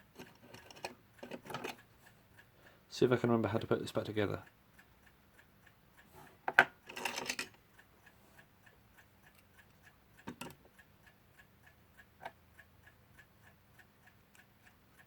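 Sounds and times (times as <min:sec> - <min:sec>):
mechanical clock ticking: 0:00.0 - 0:15.0
metal clock parts knocking: 0:00.2 - 0:01.8, 0:06.5 - 0:07.6, 0:10.2 - 0:10.6.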